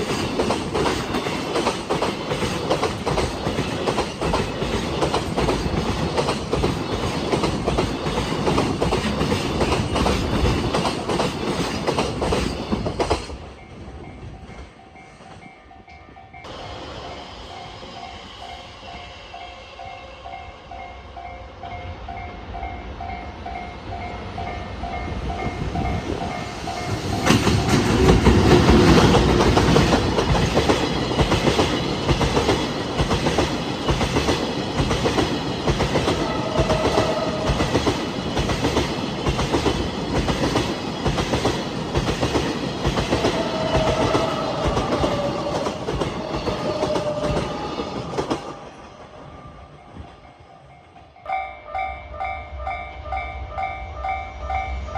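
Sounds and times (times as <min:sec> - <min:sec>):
train wheels clattering over rails: 0:00.0 - 0:13.6, 0:25.2 - 0:51.0
level-crossing warning bell: 0:00.0 - 0:16.7, 0:17.6 - 0:41.2, 0:42.7 - 0:54.9.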